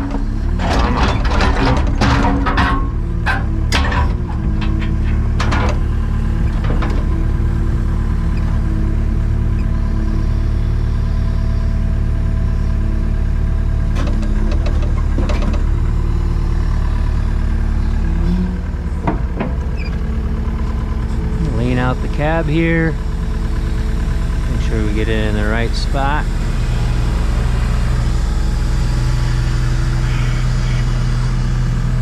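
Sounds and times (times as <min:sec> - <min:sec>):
boulders clunking: 0:00.0 - 0:10.0, 0:13.8 - 0:28.2
excavator diesel engine running: 0:00.0 - 0:32.0.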